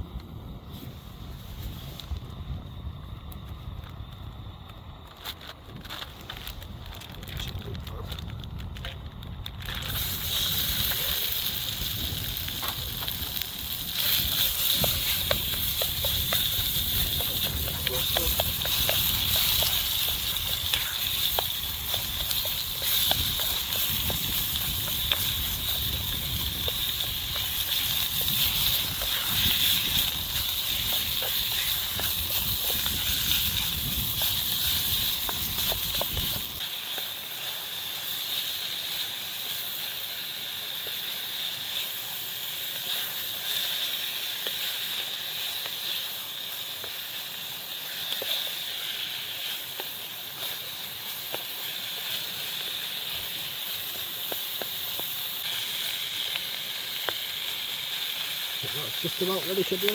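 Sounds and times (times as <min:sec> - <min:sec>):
food sizzling in oil: 0:09.6 - 0:59.9.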